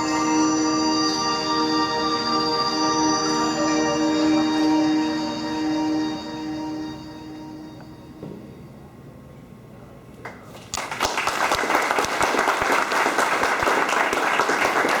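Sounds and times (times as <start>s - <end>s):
dance music: 0.0s - 8.1s
audience applause: 10.8s - 15.0s.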